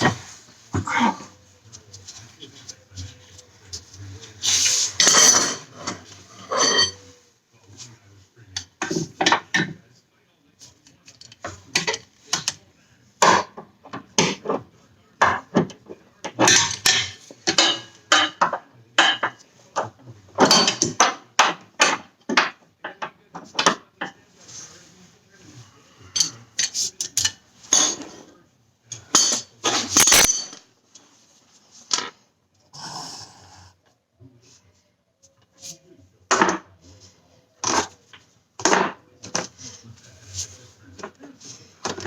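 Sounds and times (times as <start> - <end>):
tools clanking on metal parts: 29.1 - 30.7.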